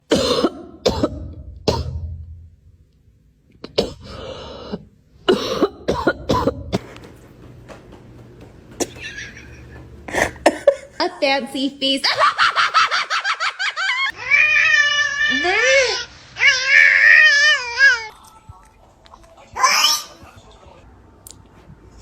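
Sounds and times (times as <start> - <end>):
person coughing: 0.0 - 2.1, 3.6 - 7.0, 10.1 - 11.0.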